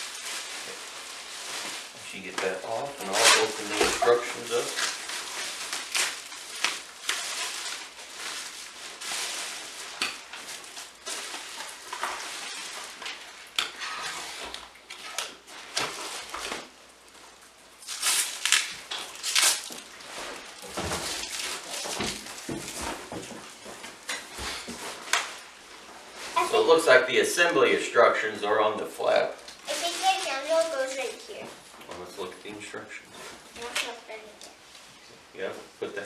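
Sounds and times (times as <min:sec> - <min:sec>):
cardboard packaging rustling: 0:00.0 - 0:27.1, 0:28.9 - 0:32.3, 0:33.1 - 0:35.0.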